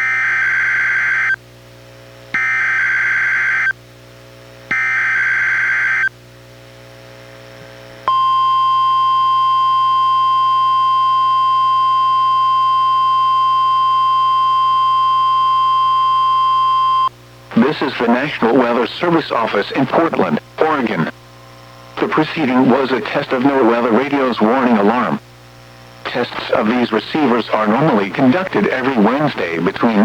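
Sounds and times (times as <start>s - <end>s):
steady warning alarm tone: 0.0s - 1.4s, 2.4s - 3.8s, 4.7s - 6.1s, 8.1s - 21.0s.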